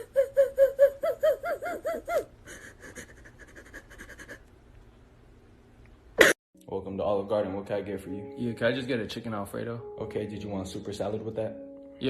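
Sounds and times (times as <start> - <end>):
breathy panting: 2.4 - 4.5.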